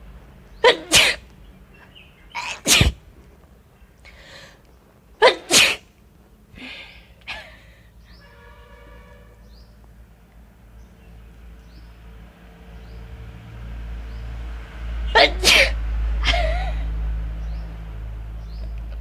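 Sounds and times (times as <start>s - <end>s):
woman sneezing: 0.6s - 1.2s, 2.4s - 3.0s, 5.2s - 5.8s, 15.2s - 16.4s.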